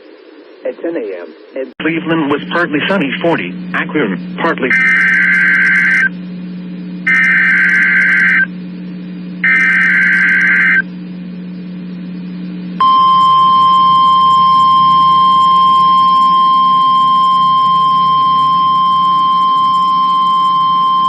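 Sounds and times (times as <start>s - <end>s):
harsh data bursts: 1.8s - 6.1s, 7.1s - 8.5s, 9.4s - 10.8s, 12.8s - 21.0s
steady warning alarm tone: 4.7s - 6.1s, 7.0s - 8.5s, 9.4s - 10.8s, 12.8s - 21.0s.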